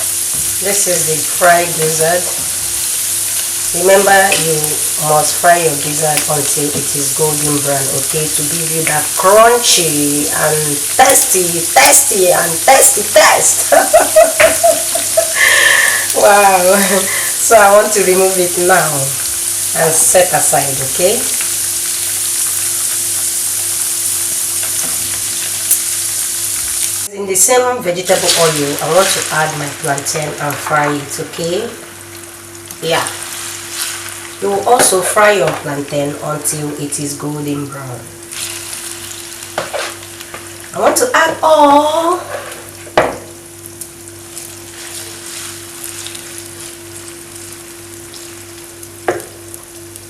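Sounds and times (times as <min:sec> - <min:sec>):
chicken frying in oil: 0:00.0 - 0:35.6, 0:43.4 - 0:50.0.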